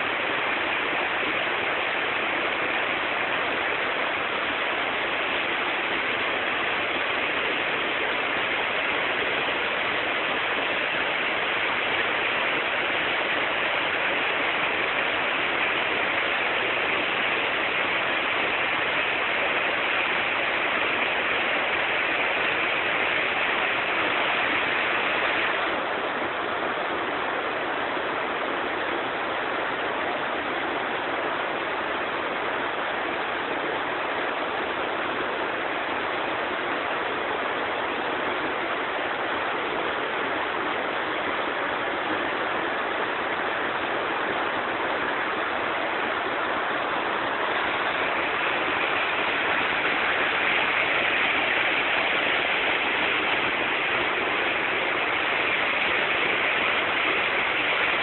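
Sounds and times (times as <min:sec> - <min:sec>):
waterfall rushing water: 0:00.0 - 0:58.0.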